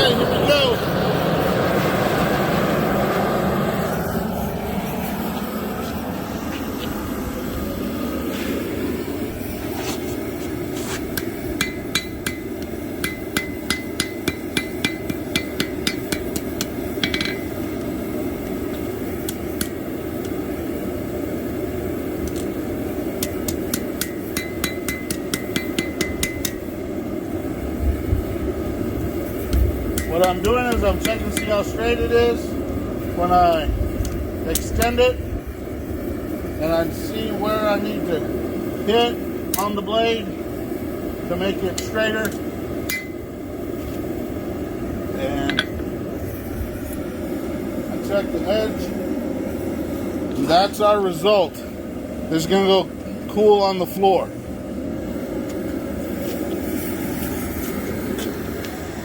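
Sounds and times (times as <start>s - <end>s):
steady low rush: 0.0s - 59.0s
hammer striking steel on anvil: 11.2s - 17.5s, 23.2s - 26.6s, 29.5s - 31.6s, 42.2s - 43.2s.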